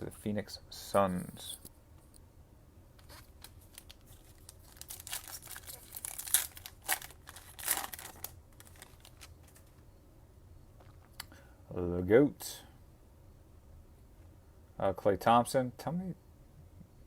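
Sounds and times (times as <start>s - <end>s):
foil wrapper tearing and crinkling: 3.0s - 9.7s.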